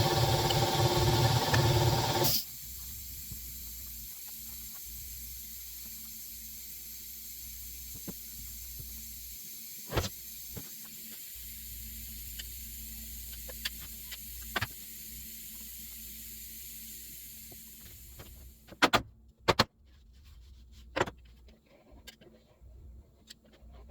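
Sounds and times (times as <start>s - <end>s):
room hiss and hum: 0.0s - 18.8s.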